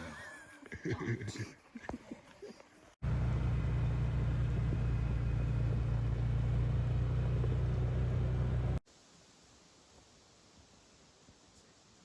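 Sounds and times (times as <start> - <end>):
vehicle engine running: 3.0 - 8.8.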